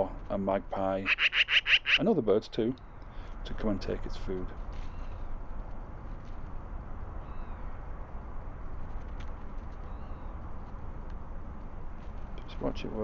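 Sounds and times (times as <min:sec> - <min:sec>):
low outdoor rumble and hiss: 0:00.0 - 0:13.0
faint bird chirps: 0:07.2 - 0:07.7.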